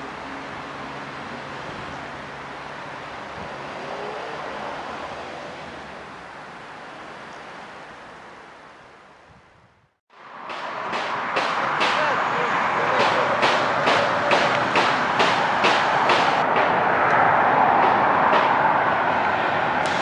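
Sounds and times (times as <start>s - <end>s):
outdoor rushing noise: 10.1s - 20.0s.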